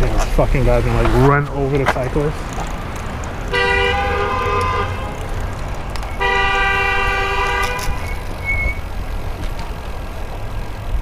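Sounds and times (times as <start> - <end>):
road traffic rumble: 0.0 - 11.0
car horn honking: 3.5 - 5.3, 6.1 - 8.8.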